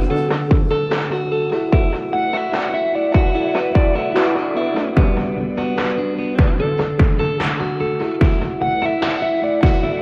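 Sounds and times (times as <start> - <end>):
guitar over drum beat: 0.0 - 10.0
deep kick-drum thump: 6.4 - 7.4, 8.2 - 8.6.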